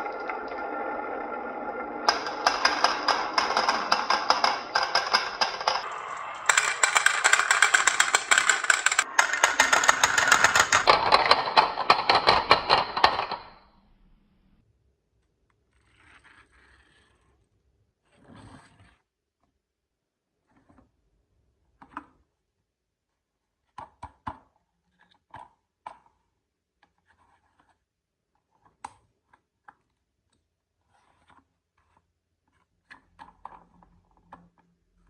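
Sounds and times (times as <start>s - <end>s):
glass marbles clattering down track: 2.0s - 13.5s.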